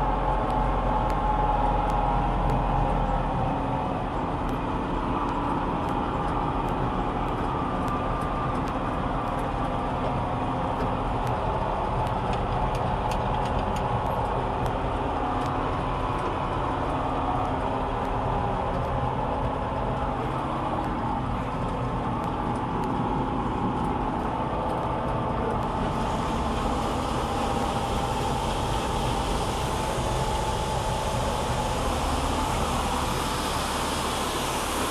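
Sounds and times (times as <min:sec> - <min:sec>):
machinery ticking: 0:00.0 - 0:33.7
combine harvester engine droning: 0:00.0 - 0:34.9
hiss: 0:25.6 - 0:34.9.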